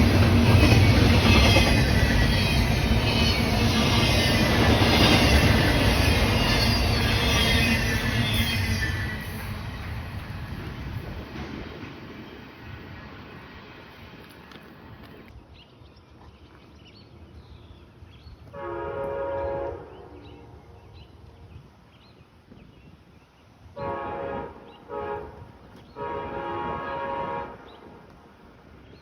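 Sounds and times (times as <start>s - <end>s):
low rumble of train: 0.0s - 15.9s, 17.0s - 29.0s
locomotive air horn: 18.5s - 20.2s, 23.8s - 27.7s.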